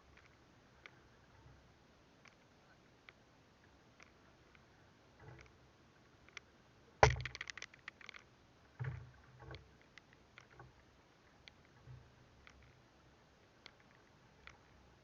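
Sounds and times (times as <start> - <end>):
dull thuds: 7.0 - 7.4
knocks on wooden boat: 7.0 - 7.4.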